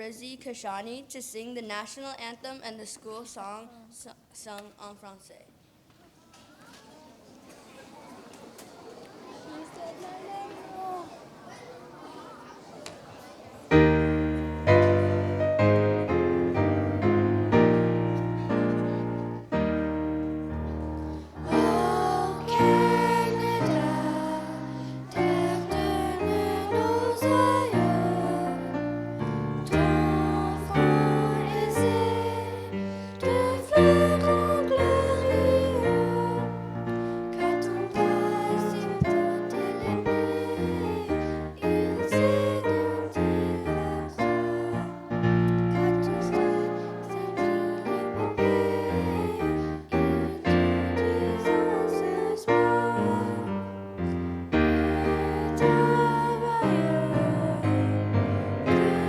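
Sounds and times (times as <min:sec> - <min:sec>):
young people singing: 0:06.9 - 0:59.0
piano accompaniment: 0:13.7 - 0:59.0.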